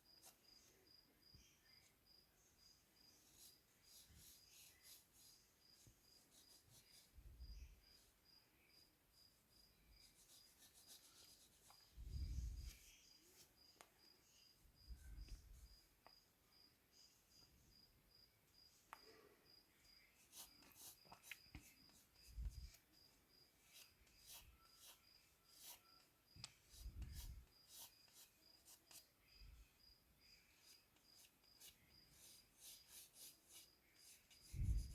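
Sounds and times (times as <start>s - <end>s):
faint cricket chirping: 0.0s - 34.9s
pencil scratching on paper: 3.2s - 7.2s, 10.0s - 11.9s, 20.2s - 29.2s, 30.6s - 34.9s.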